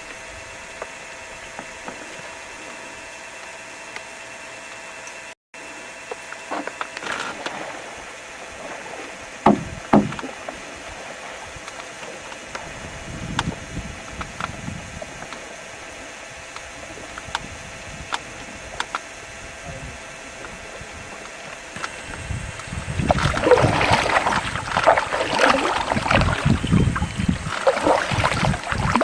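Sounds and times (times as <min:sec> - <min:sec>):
knocks against a canoe: 0:09.5 - 0:10.4.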